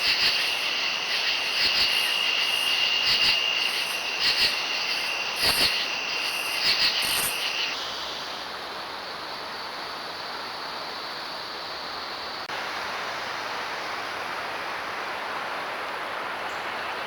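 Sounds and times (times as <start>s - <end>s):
insects trilling: 0.0s - 12.5s
pulsing insect chirp: 0.0s - 12.5s
steady hiss: 0.0s - 17.0s.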